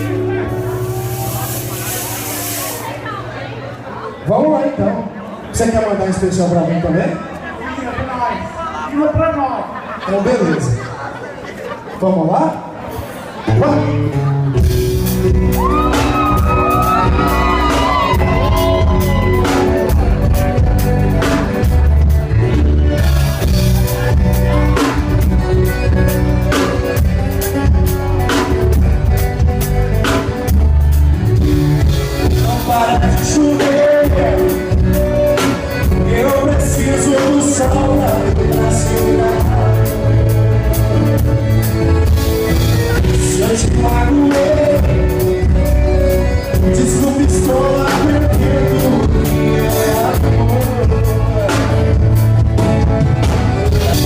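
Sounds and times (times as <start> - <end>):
live band playing romantic song: 0.0 - 54.0
person singing: 15.4 - 21.8, 32.1 - 53.0.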